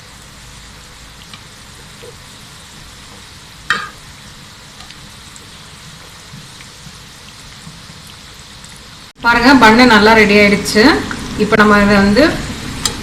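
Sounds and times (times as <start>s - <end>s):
dough sizzling in hot oil: 0.0s - 13.0s
utensil clinking on pan: 3.7s - 4.0s.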